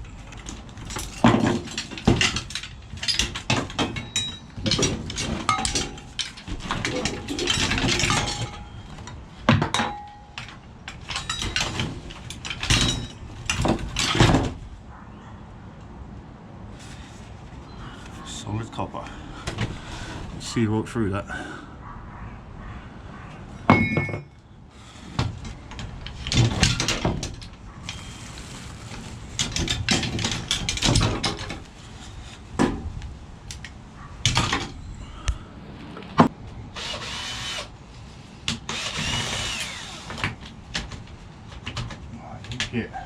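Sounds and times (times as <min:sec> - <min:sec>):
metal scraping and rattling: 0:00.0 - 0:14.7, 0:25.2 - 0:32.9
metal pieces clanking: 0:00.4 - 0:14.5.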